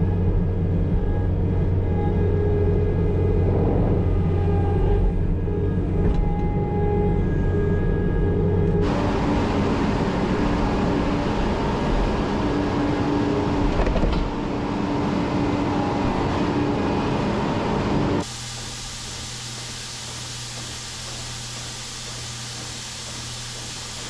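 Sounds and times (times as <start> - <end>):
low hum: 0.0 - 18.2
machine engine running: 0.0 - 18.9.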